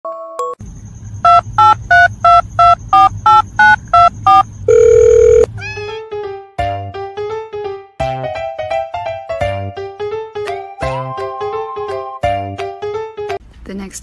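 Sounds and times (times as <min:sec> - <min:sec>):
telephone keypad beeps: 0:01.3 - 0:05.5.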